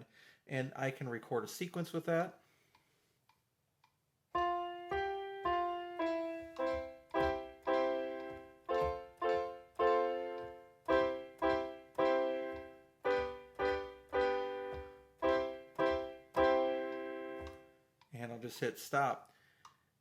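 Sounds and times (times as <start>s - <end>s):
piano chords and notes: 4.4s - 17.8s.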